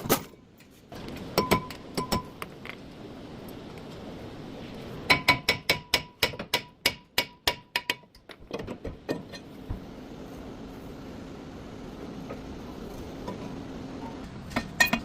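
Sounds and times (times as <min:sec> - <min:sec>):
hammer striking metal: 0:05.1 - 0:08.0.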